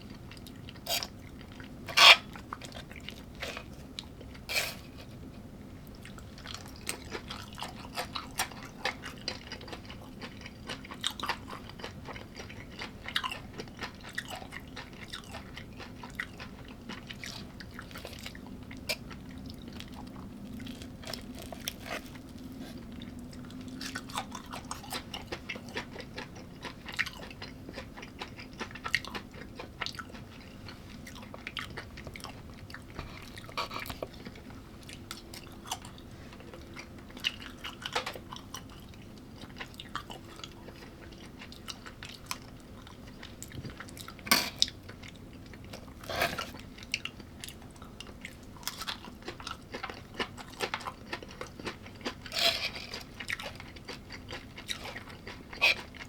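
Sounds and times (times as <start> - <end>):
faint steady hum: 0.0 - 56.0
person chewing food: 0.0 - 56.0
loud crunches: 20.5 - 22.8.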